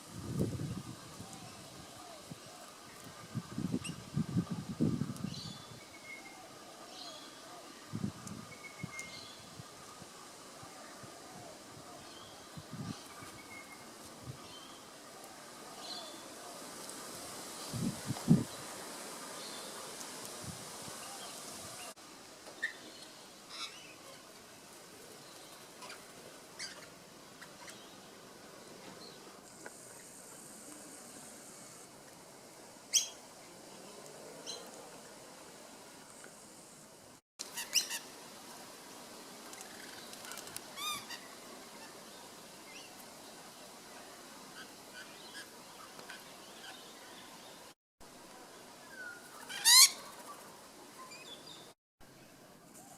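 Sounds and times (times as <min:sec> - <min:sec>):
faint outdoor background: 0:00.0 - 0:52.9
parrots chirping and squawking: 0:49.5 - 0:50.0.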